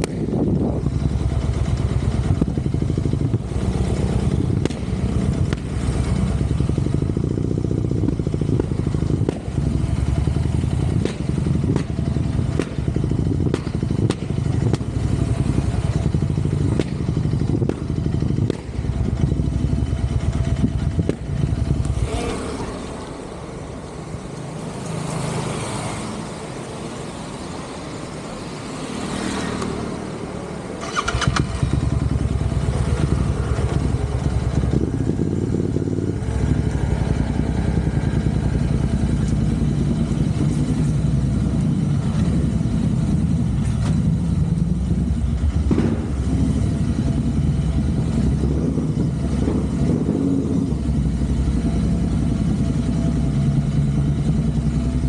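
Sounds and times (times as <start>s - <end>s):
motorcycle engine running: 0.0s - 26.6s, 27.3s - 55.0s.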